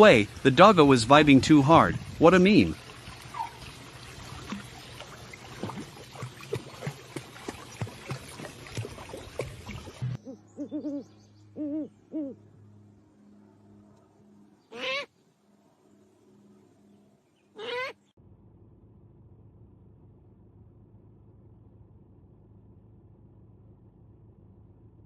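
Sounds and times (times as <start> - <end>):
animal calls: 3.3 - 3.6, 14.7 - 15.1, 17.5 - 18.1.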